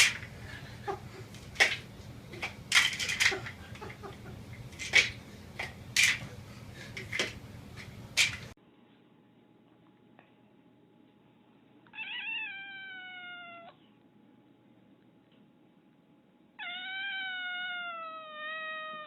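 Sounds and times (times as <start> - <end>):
cat meowing: 11.9 - 13.8, 16.6 - 19.0.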